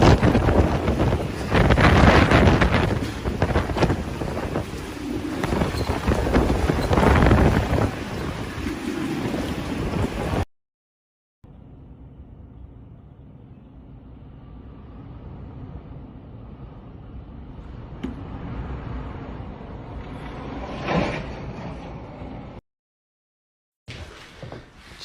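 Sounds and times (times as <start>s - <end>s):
wind blowing across microphone: 0.0s - 10.4s.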